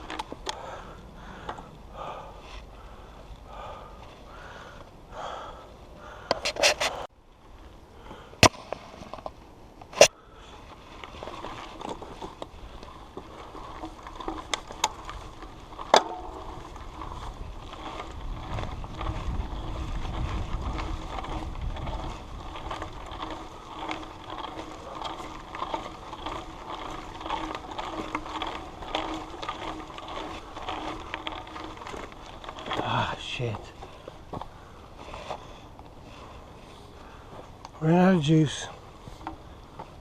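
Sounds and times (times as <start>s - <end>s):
bike rattling and clicking: 0.0s - 40.0s
bike tyres rolling on dirt: 0.0s - 40.0s
wind rumbling on microphone: 10.6s - 35.3s.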